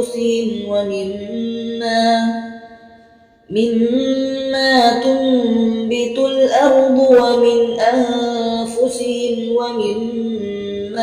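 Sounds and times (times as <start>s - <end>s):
person chanting melodic recitation: 0.0s - 11.0s.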